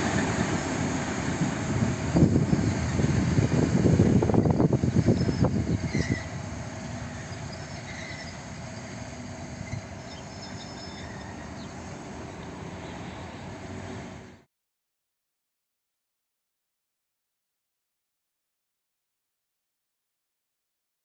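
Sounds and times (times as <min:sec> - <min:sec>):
diesel locomotive engine rumbling: 0:00.0 - 0:14.5.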